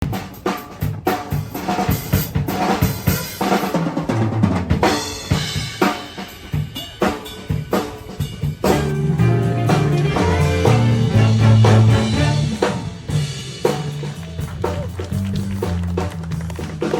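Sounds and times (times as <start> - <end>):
drum kit playing busily: 0.0 - 16.9
bass notes: 8.6 - 16.8.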